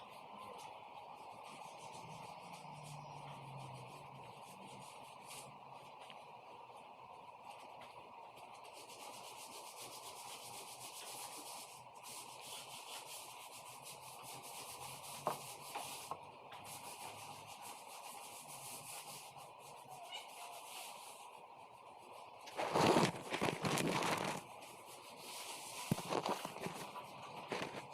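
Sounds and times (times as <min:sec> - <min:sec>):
faint rubbing on wood: 0:08.4 - 0:27.9.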